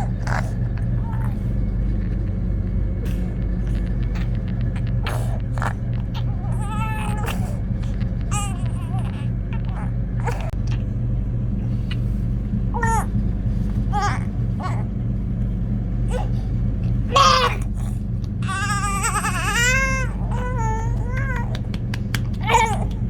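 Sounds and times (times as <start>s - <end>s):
low electrical hum: 0.0s - 23.0s
high-pitched vocal cries: 3.7s - 10.8s, 13.9s - 14.9s, 17.1s - 23.0s.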